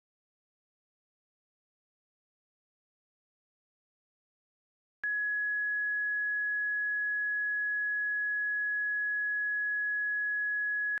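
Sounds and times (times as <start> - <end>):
steady high-pitched beep: 5.0 - 11.0.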